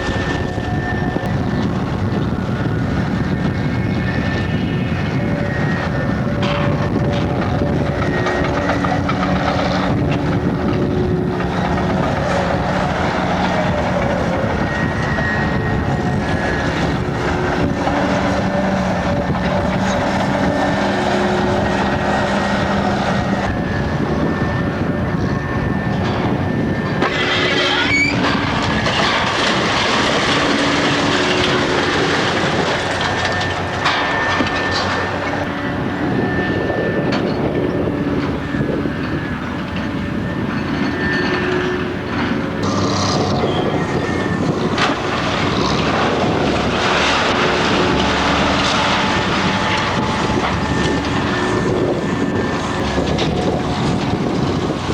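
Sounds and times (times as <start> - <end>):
clanking rumble: 0.0 - 54.9
demolition machinery droning: 0.0 - 54.9.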